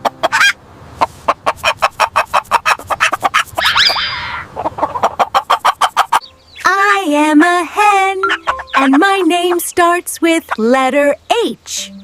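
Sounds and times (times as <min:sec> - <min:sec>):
hen clucking: 0:00.0 - 0:06.9, 0:07.8 - 0:10.7
hen squawk: 0:00.1 - 0:00.6, 0:01.5 - 0:06.3, 0:08.3 - 0:09.6.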